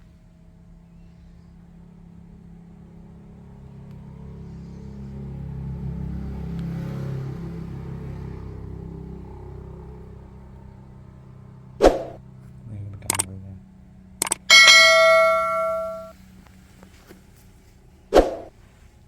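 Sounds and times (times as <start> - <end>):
metal object ringing: 14.2 - 16.1
sharp clicks: 14.2 - 16.1.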